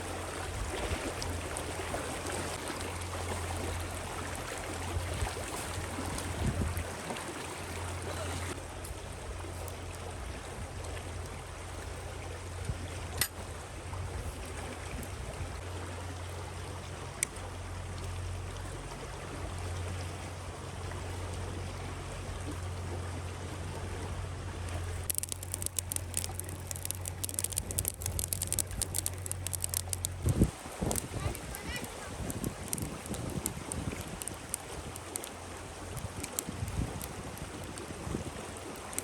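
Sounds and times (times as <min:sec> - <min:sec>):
sharp crackling clicks: 0:25.0 - 0:39.0.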